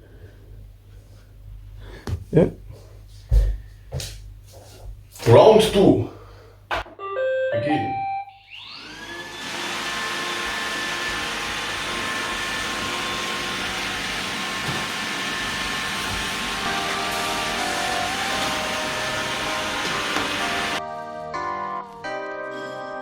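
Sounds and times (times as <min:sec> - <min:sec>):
robot vacuum beeping tune: 0:07.0 - 0:09.4
suction motor whine: 0:08.4 - 0:20.8.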